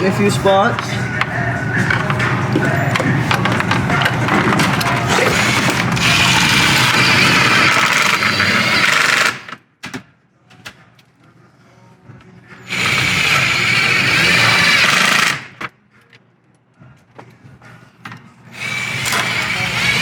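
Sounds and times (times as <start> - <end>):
impact driver driving screws: 3.4 - 9.6, 12.7 - 15.6, 18.6 - 20.0.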